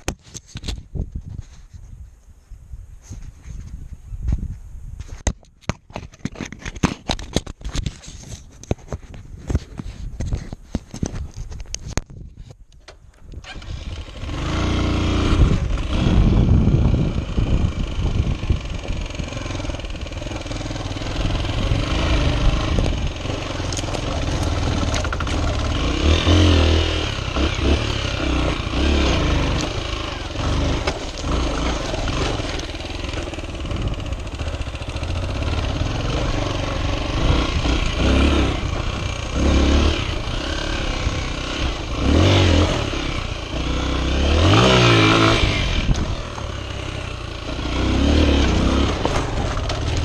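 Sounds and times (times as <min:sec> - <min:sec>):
motorcycle engine running: 0:13.4 - 0:50.0.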